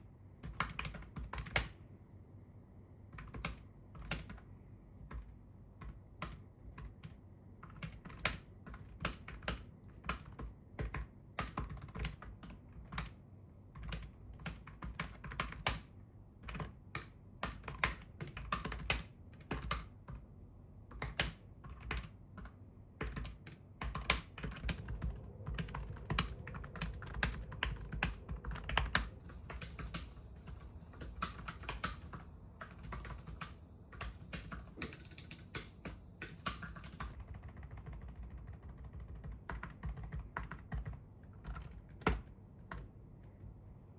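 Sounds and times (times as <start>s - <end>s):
small keyboard keys clicking: 0.4s - 1.8s, 3.2s - 4.4s, 5.0s - 13.2s, 13.8s - 20.2s, 20.9s - 43.6s.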